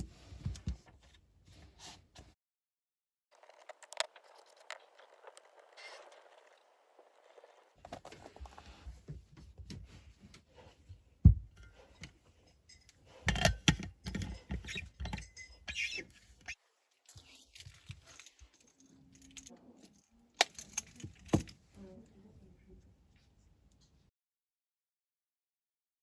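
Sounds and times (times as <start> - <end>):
rustling: 3.4 - 10.8.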